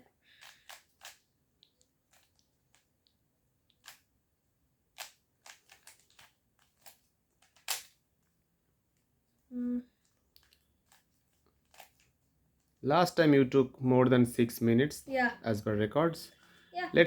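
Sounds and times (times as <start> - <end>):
puzzle cube layers clicking: 0.3 - 2.9, 3.7 - 4.1, 4.9 - 8.0.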